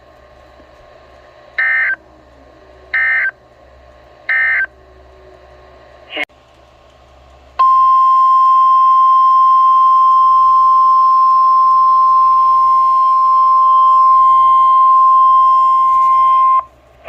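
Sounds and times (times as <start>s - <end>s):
steady warning alarm tone: 1.6s - 2.0s, 2.9s - 3.4s, 4.3s - 4.7s, 7.6s - 16.7s.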